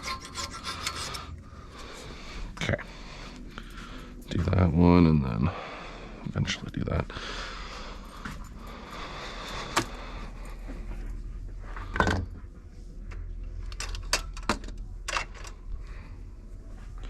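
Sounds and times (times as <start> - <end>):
metal scraping: 0.0 - 2.0
steady low hum: 0.0 - 17.0.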